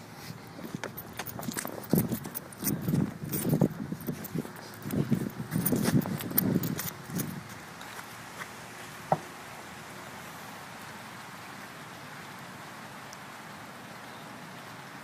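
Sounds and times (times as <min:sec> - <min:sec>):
steady rain falling: 0:07.5 - 0:15.0.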